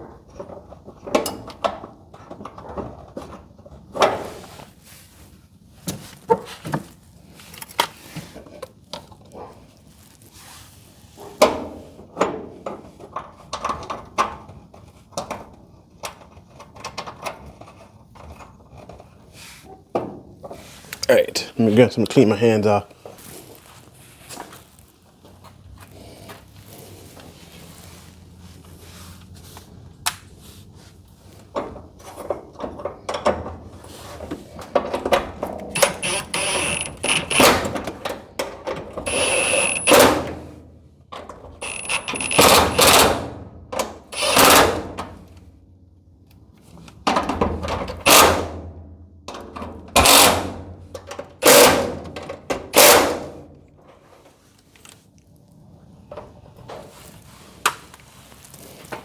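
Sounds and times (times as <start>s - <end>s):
hands rubbing and rustling: 56.9s - 59.0s.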